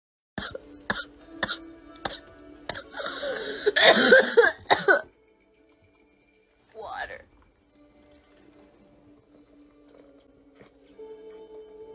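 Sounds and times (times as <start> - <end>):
girl barking cough: 3.7 - 5.1.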